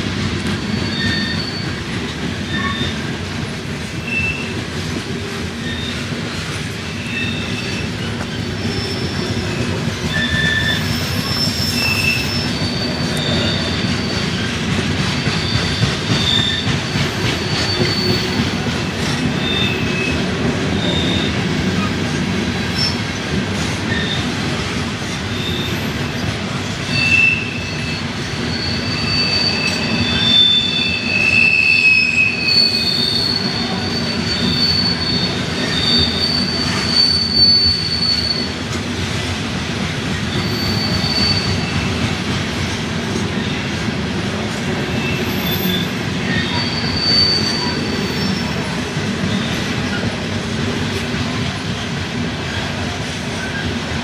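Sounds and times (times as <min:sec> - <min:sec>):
train wheels rumbling on rail: 0:00.0 - 0:54.0
high-pitched wheel squeal: 0:00.7 - 0:01.8, 0:06.9 - 0:14.5, 0:15.2 - 0:20.2, 0:26.9 - 0:38.6, 0:40.3 - 0:42.1, 0:44.9 - 0:48.6.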